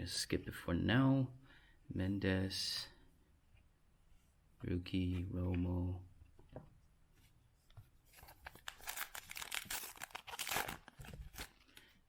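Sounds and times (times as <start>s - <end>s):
foil wrapper tearing and crinkling: 8.5s - 11.8s.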